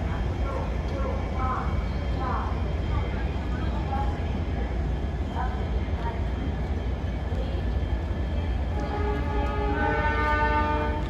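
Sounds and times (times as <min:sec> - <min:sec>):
locomotive horn chord: 0:08.8 - 0:11.0.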